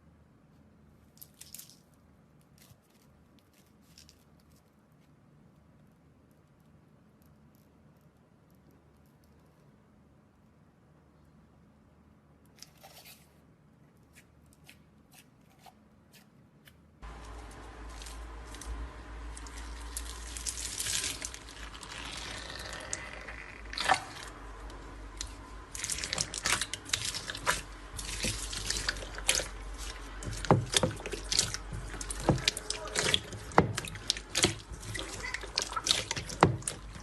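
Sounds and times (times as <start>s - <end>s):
steady low hum: 17.0s - 37.0s
slime crackling and popping: 17.5s - 37.0s.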